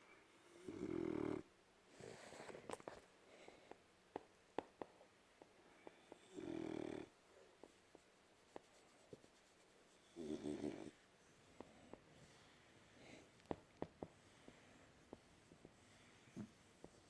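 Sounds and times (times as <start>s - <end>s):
dog snoring: 0.5s - 2.4s, 6.0s - 7.1s, 10.1s - 11.0s.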